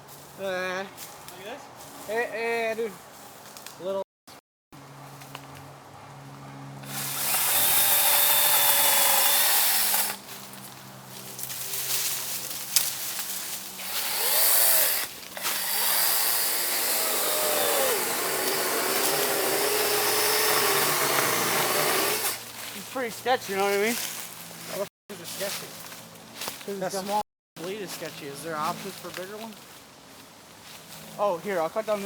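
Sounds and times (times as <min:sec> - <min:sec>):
electric motor hum: 0:06.7 - 0:10.3, 0:13.8 - 0:22.4
chainsaw cutting wood: 0:06.8 - 0:10.3, 0:13.7 - 0:22.5.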